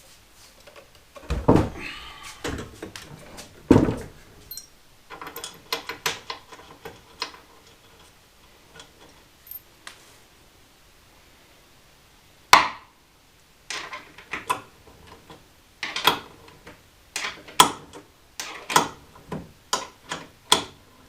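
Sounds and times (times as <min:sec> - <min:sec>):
heavy thumps on workbench: 0:03.6 - 0:04.2.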